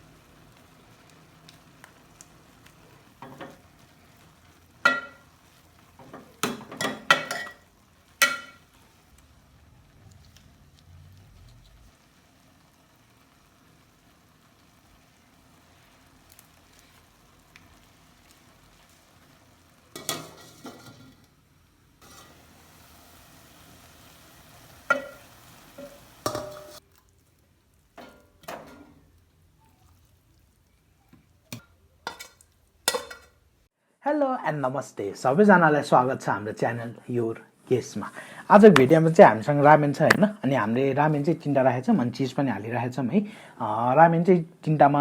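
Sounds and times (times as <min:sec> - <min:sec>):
faint sizzling hiss: 0:00.0 - 0:45.0
utensils clinking and knocking: 0:25.8 - 0:26.8.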